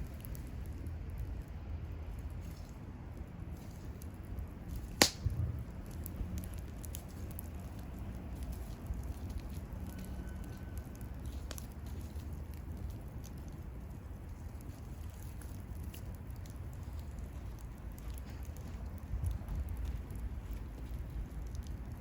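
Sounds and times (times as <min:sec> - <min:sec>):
bonfire crackling: 0:00.0 - 0:22.0
fire rumbling: 0:00.0 - 0:22.0
sharp pop of burning wood: 0:04.7 - 0:07.9.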